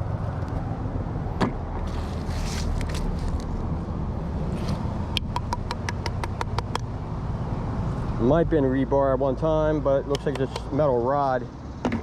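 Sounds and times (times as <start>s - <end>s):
road traffic rumble: 0.0s - 12.0s
rustling scrapes: 1.8s - 3.6s
sharp clicks: 10.1s - 10.7s.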